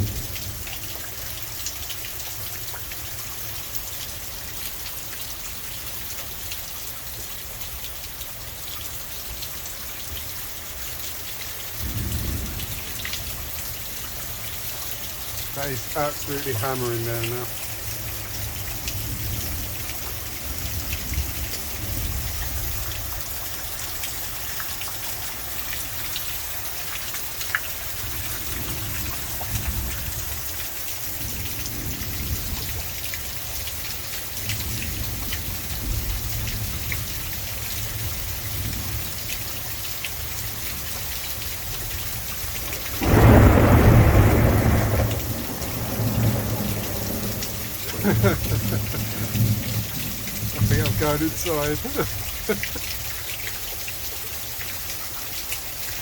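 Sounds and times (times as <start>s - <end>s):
low thunder rumbling: 0.0s - 0.7s, 11.8s - 13.6s, 15.4s - 23.2s, 41.9s - 52.7s
heavy rain pouring: 0.0s - 56.0s
loud thunder crack: 42.6s - 52.2s.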